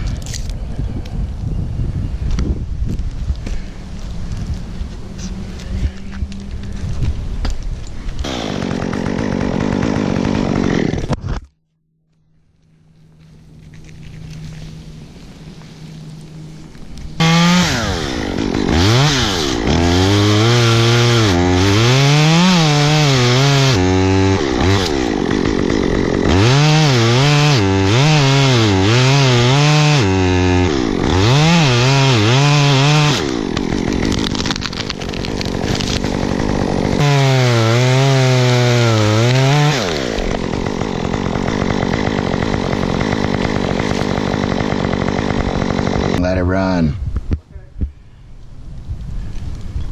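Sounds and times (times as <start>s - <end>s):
chainsaw cutting wood: 8.2s - 11.5s, 17.2s - 46.2s.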